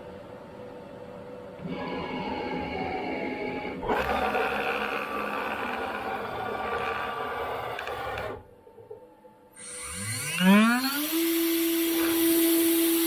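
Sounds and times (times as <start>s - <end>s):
milling machine cutting: 3.8s - 8.4s, 9.6s - 13.0s.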